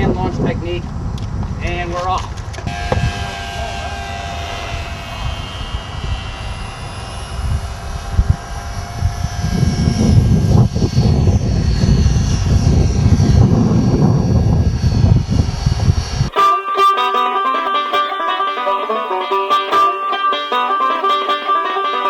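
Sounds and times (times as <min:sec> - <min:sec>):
model airplane motor whining: 0:02.6 - 0:16.6
loud low rumble: 0:02.7 - 0:16.4.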